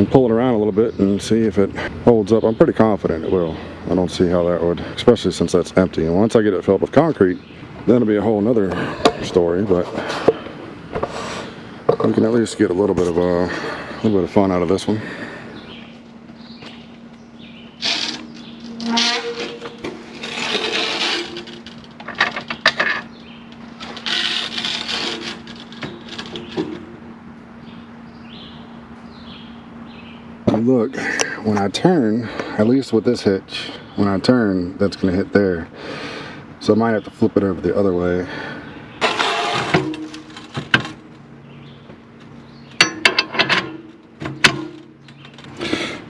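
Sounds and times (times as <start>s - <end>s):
steady low hum: 0.0s - 46.0s
metal parts clanking: 17.8s - 23.1s, 42.8s - 45.5s
metal scraping: 17.8s - 23.1s, 23.8s - 26.8s, 39.0s - 41.0s
metal clanks from hitch coupling: 42.8s - 45.6s.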